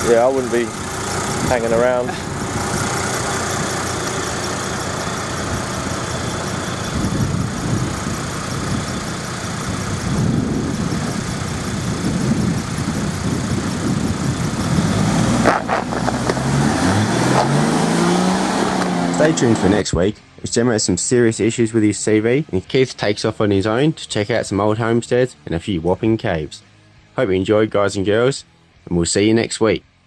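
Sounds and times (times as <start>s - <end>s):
vehicle engine running and revving: 0.0s - 19.8s.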